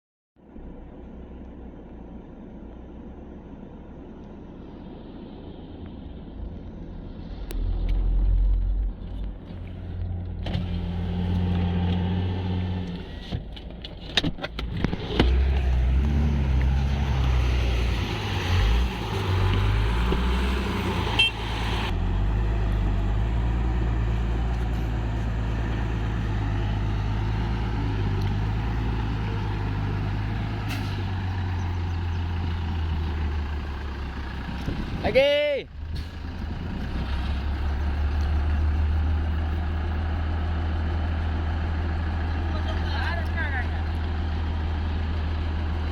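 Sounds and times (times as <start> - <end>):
heavy diesel engine running: 15.3 - 45.9.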